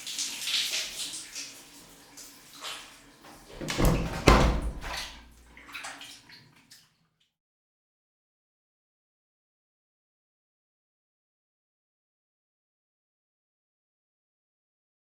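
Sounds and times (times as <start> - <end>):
shower water splashing: 0.0 - 6.9
water dripping: 3.5 - 6.9
loud thump: 3.6 - 5.2.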